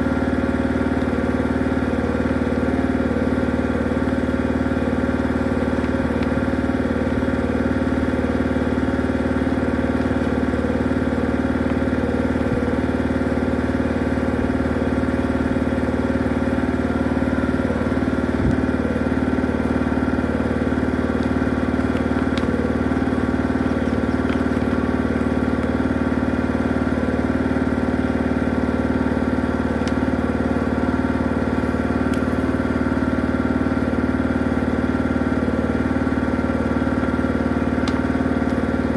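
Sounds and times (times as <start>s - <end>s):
drain-cleaning machine motor running: 0.0s - 38.9s.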